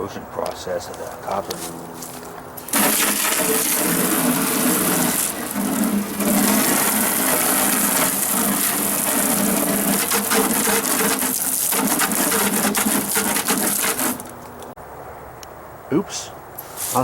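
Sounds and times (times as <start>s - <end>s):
water spraying from hose: 2.0s - 14.5s, 16.6s - 17.0s.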